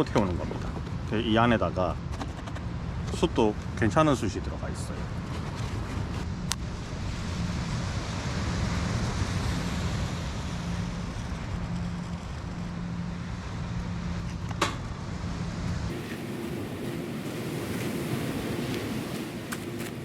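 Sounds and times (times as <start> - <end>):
sea surf rushing: 6.7 - 11.2, 15.9 - 20.0
wind buffeting microphone: 15.9 - 20.0.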